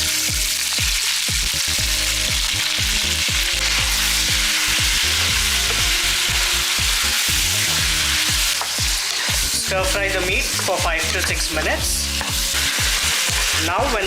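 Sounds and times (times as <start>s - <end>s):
meat sizzling in hot oil: 0.0s - 14.0s.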